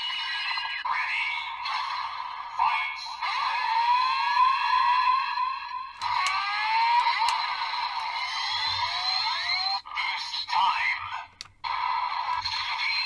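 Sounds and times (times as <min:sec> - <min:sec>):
toy click: 0:06.0 - 0:09.2, 0:11.3 - 0:12.8.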